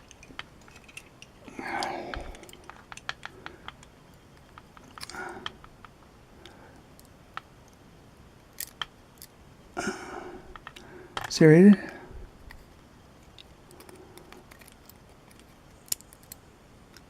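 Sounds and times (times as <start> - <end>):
small metal tools clicking: 0.0 - 5.6.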